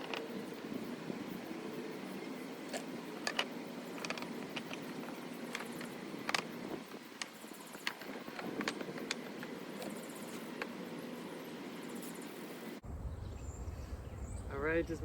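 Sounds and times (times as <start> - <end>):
honeybees humming: 0.0 - 12.8
wooden bars clacking: 2.7 - 10.0.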